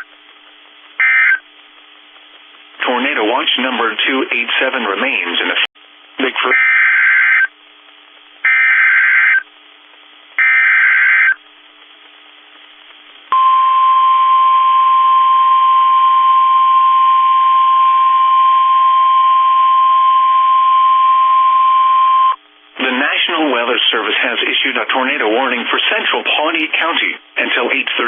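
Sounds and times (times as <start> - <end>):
steady alarm tone: 6.5 - 7.5, 8.4 - 9.4, 10.4 - 11.4
buzzy digital data bursts: 8.4 - 9.4.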